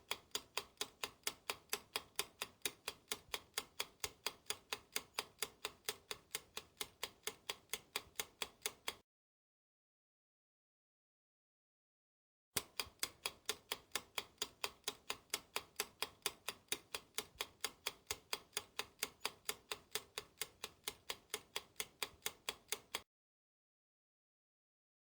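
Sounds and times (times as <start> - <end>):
clock ticking: 0.0 - 9.0, 12.6 - 23.0.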